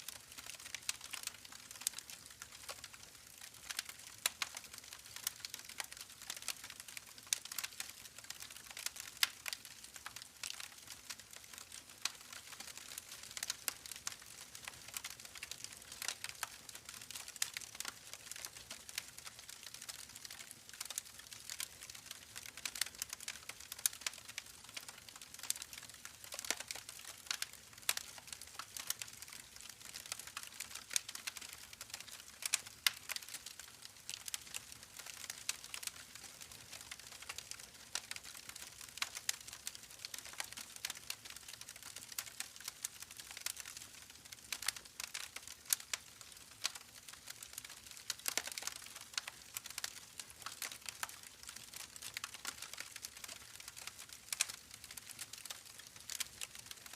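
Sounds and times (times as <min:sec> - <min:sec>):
campfire crackling: 0:00.1 - 0:56.9.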